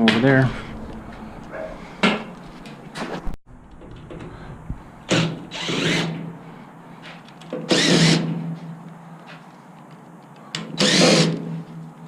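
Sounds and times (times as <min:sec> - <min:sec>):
power drill running: 0:05.5 - 0:06.2, 0:07.7 - 0:08.3, 0:10.8 - 0:11.4.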